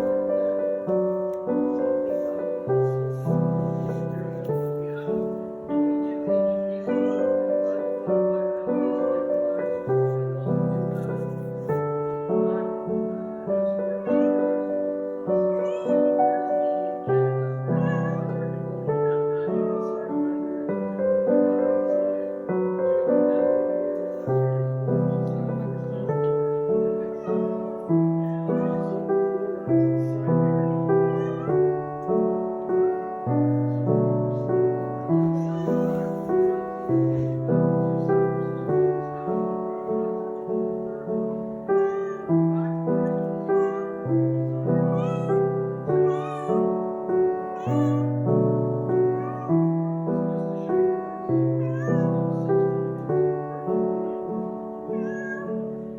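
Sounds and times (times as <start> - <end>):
gentle piano music: 0.0 - 55.9
kitten mewing: 54.9 - 55.6.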